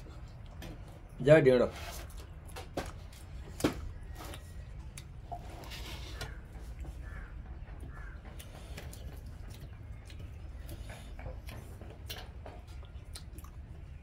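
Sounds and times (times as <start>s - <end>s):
chewing with wet mouth clicks: 8.3s - 14.0s.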